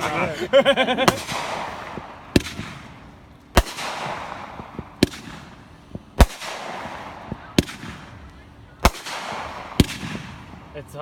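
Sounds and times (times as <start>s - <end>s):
fireworks bangs: 0.0s - 11.0s
fireworks hiss: 0.0s - 11.0s.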